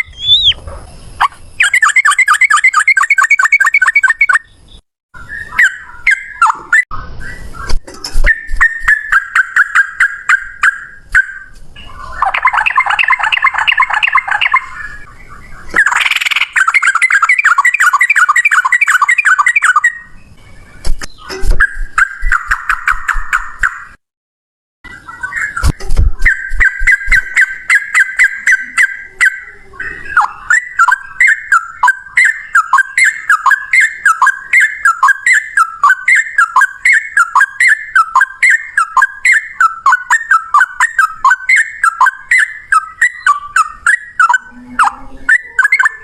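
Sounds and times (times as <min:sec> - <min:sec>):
bulbuls chattering trills: 0:00.0 - 0:00.6.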